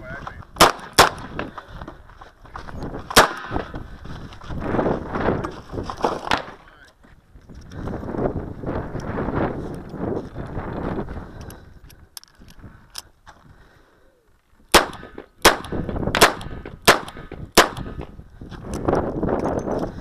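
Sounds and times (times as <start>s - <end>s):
wind buffeting microphone: 0.0s - 20.0s
handgun shots: 0.6s - 1.3s, 3.1s - 3.6s, 14.7s - 18.1s.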